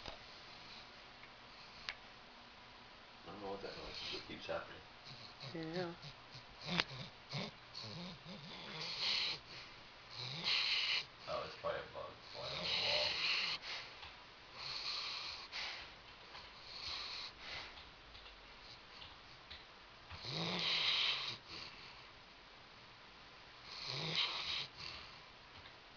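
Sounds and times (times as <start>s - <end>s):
dog snoring: 3.3s - 13.9s, 14.5s - 17.8s, 20.1s - 22.1s, 23.6s - 25.2s.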